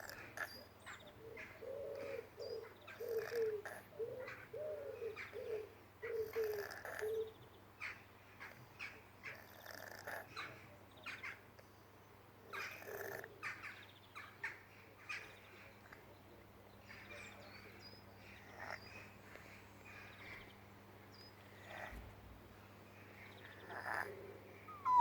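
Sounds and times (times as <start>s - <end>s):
small birds chirping: 0.0s - 11.9s, 12.5s - 25.0s
animal raspy snoring breaths: 6.2s - 7.1s, 9.3s - 10.3s, 12.6s - 13.3s, 21.6s - 22.2s, 23.6s - 25.0s
short falling call: 24.7s - 25.0s.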